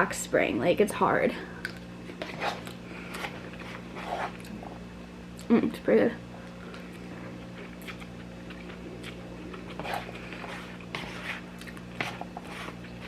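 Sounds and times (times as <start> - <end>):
low electrical hum: 0.0 - 13.0
person chewing food: 1.6 - 5.5, 6.4 - 13.0.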